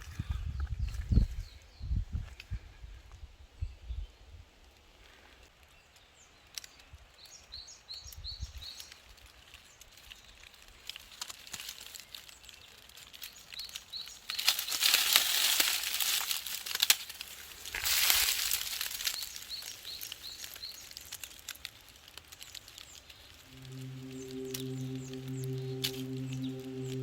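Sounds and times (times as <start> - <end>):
rustling with crackles: 4.7 - 27.0
bird chirping: 23.2 - 27.0.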